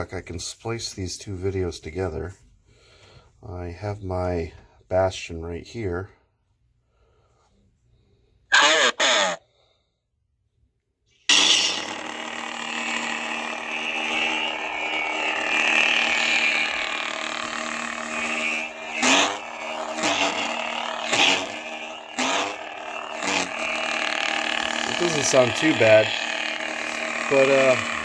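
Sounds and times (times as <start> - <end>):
lightsaber humming through speaker: 11.3 - 28.0
short loud distorted bursts: 11.3 - 28.0.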